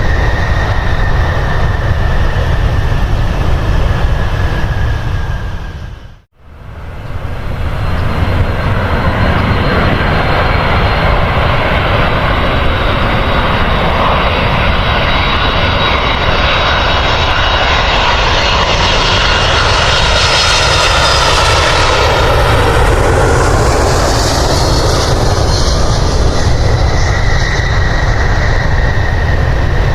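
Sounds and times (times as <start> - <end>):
airliner engines passing close: 0.0 - 29.9.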